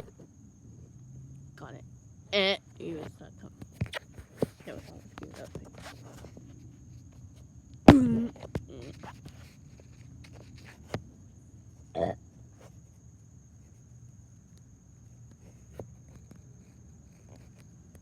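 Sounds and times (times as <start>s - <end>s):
high insect drone: 0.0s - 18.0s
grunt-like voice: 12.0s - 12.2s.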